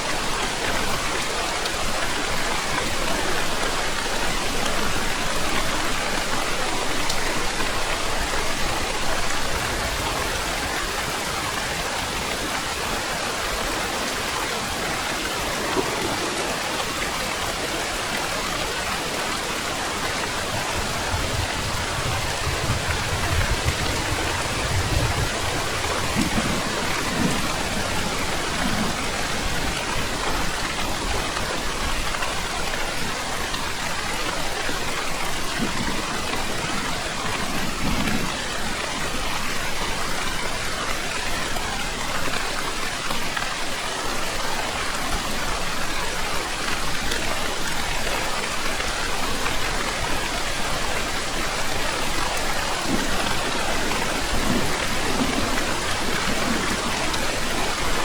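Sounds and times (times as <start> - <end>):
heavy rainfall: 0.0 - 58.0
distant thunder rumbles: 20.2 - 31.2, 52.8 - 58.0.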